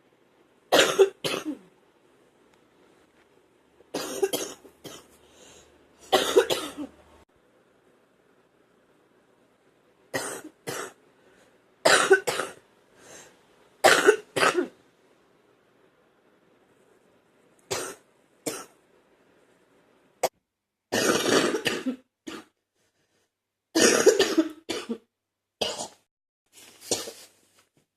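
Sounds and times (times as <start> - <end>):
person coughing wet coughs: 0.7 - 1.7, 3.9 - 5.1, 6.1 - 6.9, 10.2 - 11.0, 11.8 - 12.6, 13.8 - 14.8, 17.7 - 18.7, 20.9 - 22.6, 23.8 - 26.1, 26.9 - 27.2.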